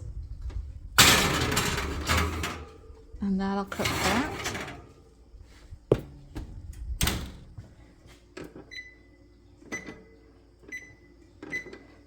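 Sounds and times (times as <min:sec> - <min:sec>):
oven control panel beeps: 0:08.7 - 0:12.0.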